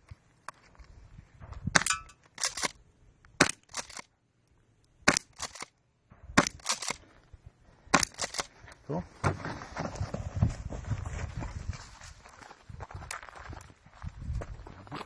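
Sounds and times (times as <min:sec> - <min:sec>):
airsoft gun firing: 0:05.1 - 0:05.6, 0:06.4 - 0:07.0.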